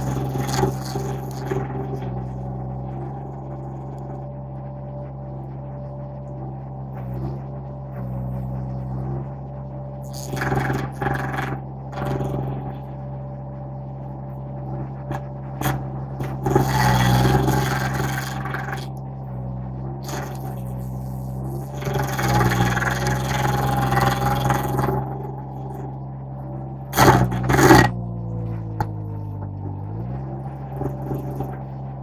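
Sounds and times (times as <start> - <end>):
engine running: 0.0 - 32.0
stump grinder grinding wood: 16.3 - 18.9, 21.6 - 25.6, 27.0 - 28.0.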